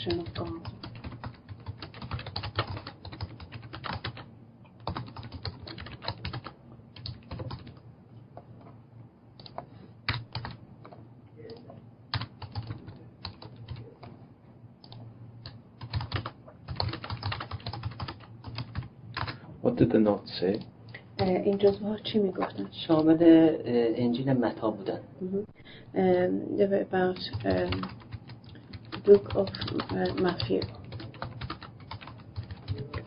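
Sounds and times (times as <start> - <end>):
typing on computer keyboard: 0.1 - 4.2, 4.8 - 7.8, 9.4 - 11.0, 12.1 - 14.2, 14.8 - 19.4, 27.2 - 33.0.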